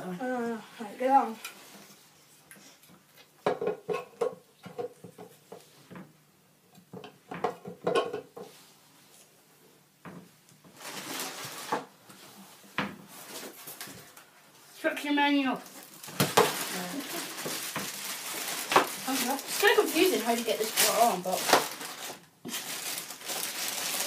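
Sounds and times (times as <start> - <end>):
rustling: 10.6 - 14.4, 15.5 - 24.0.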